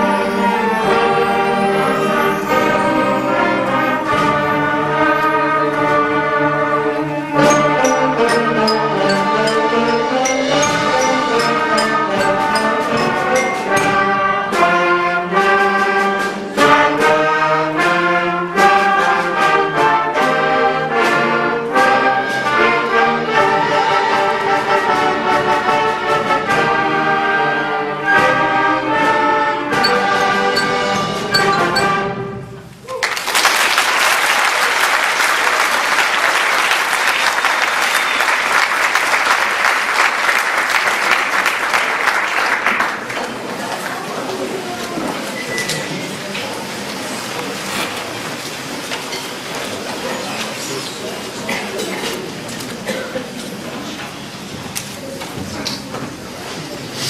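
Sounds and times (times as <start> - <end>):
concert band playing: 0.0 - 32.9
audience applause: 32.9 - 44.6.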